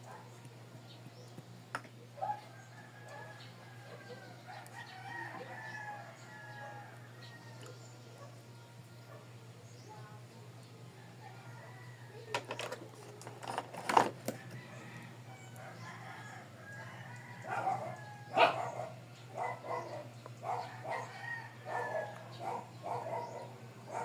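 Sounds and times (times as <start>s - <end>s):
dog barking: 0.0s - 0.4s, 2.2s - 2.5s, 9.1s - 9.3s, 17.4s - 21.1s, 21.7s - 24.0s
steady low hum: 0.0s - 24.0s.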